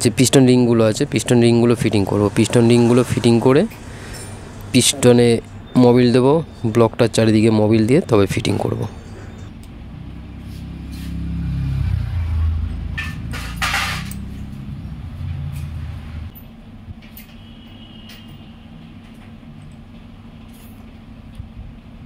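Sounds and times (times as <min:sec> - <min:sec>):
vehicle engine passing by: 0:01.0 - 0:05.5, 0:09.8 - 0:16.3.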